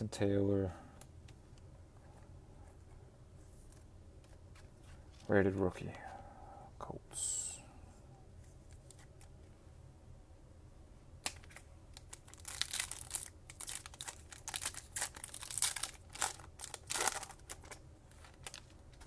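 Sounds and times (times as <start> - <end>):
foil wrapper tearing and crinkling: 11.9 - 19.0.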